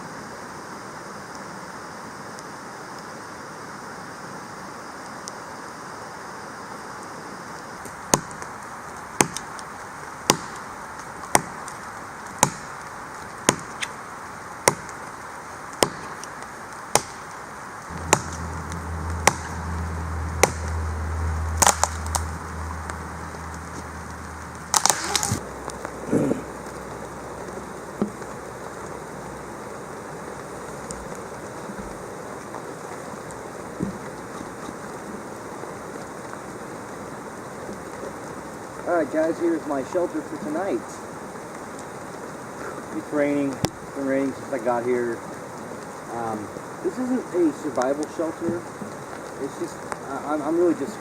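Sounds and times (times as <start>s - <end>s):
steady rain: 0.0s - 51.0s
blade chopping wood: 9.2s - 9.5s, 10.3s - 10.6s, 11.3s - 11.6s, 12.4s - 12.8s, 13.5s - 13.9s, 14.7s - 14.9s, 15.8s - 16.2s, 17.0s - 17.3s, 18.0s - 18.4s, 19.2s - 19.6s, 20.4s - 20.7s, 21.6s - 22.3s, 24.7s - 25.4s
low steady hum: 17.9s - 32.5s.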